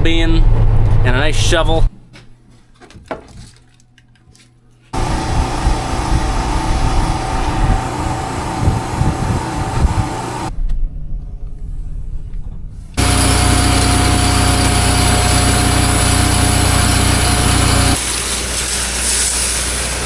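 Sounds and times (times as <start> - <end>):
engine running: 5.0 - 10.5, 13.0 - 20.0.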